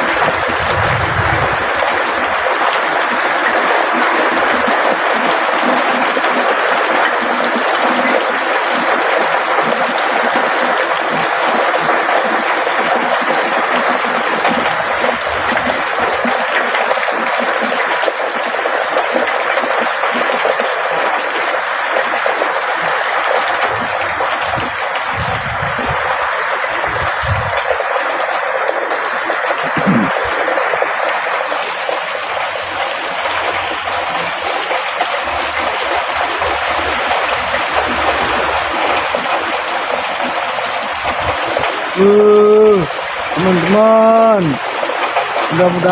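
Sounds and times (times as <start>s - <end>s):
heavy rain pouring: 0.0s - 45.9s
low rumbles: 0.1s - 2.4s, 23.7s - 27.8s.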